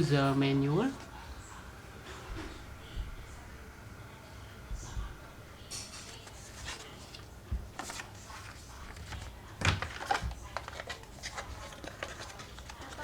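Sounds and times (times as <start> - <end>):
packaging rustling: 6.0 - 13.0.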